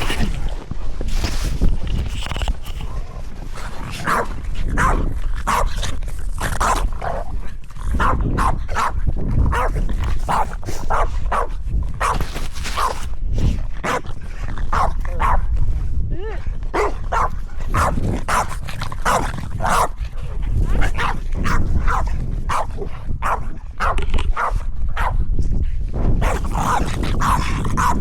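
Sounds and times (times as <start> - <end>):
dog barking: 4.0 - 5.8, 7.9 - 12.2, 14.7 - 15.5, 16.7 - 20.0, 20.8 - 25.2, 26.2 - 28.0.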